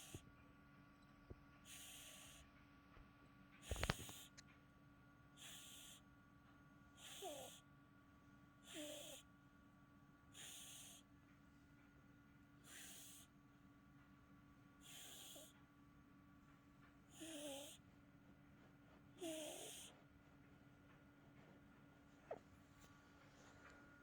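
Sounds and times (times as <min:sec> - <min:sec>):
cat snoring: 0:00.0 - 0:00.2, 0:01.7 - 0:02.4, 0:03.6 - 0:04.3, 0:05.4 - 0:06.0, 0:07.0 - 0:07.6, 0:08.6 - 0:09.3, 0:10.3 - 0:11.0, 0:12.6 - 0:13.3, 0:14.8 - 0:15.5, 0:17.1 - 0:17.8, 0:19.2 - 0:20.0.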